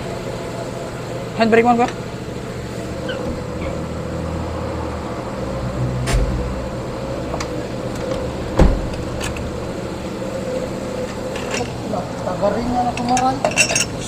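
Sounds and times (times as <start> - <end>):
machine hum: 0.0 - 13.2
dull thump: 6.0 - 6.6, 8.6 - 9.2.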